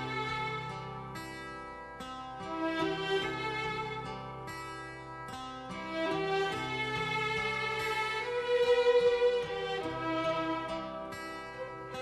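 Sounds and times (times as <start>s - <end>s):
plucked strings: 0.0s - 12.0s
sustained string tones: 5.7s - 12.0s.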